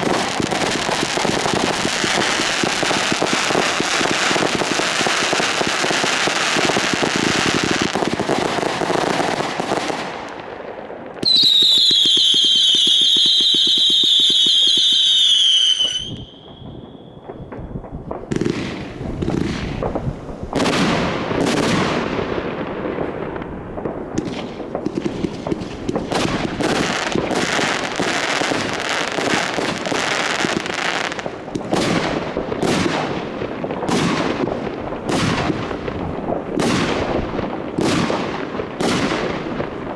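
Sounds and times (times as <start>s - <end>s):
firework bangs: 0.0s - 39.9s
fireworks crackling: 0.0s - 39.9s
falling firework whistle: 11.2s - 18.0s.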